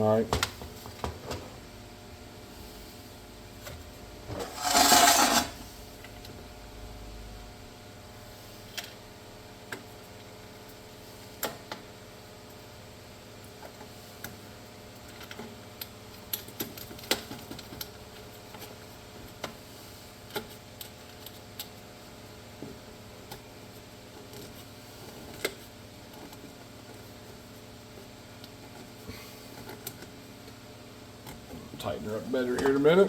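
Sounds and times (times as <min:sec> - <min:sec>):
steady low hum: 0:00.0 - 0:14.6, 0:26.1 - 0:33.0.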